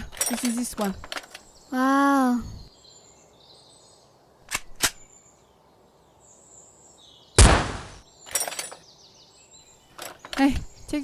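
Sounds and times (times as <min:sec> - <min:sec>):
rattle of clicks: 0:00.0 - 0:01.5, 0:08.3 - 0:08.8, 0:09.9 - 0:10.7.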